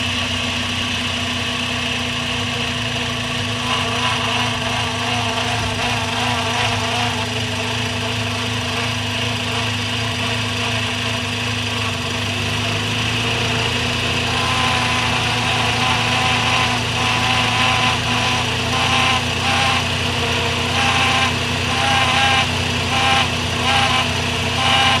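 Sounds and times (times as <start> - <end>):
car engine idling: 0.0 - 25.0
intermittent whining tone: 3.4 - 9.6.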